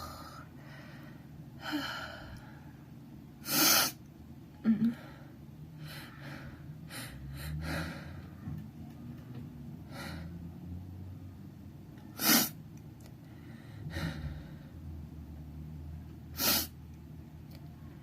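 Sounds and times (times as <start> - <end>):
soft uneven breathing: 0.0 - 4.0, 4.7 - 8.6, 9.8 - 10.6, 12.2 - 15.0
sharp intake of breath: 12.1 - 12.6, 16.4 - 16.8.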